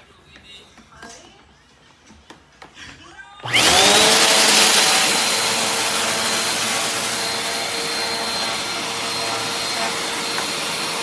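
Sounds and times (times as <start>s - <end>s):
vacuum cleaner running: 3.4s - 11.0s.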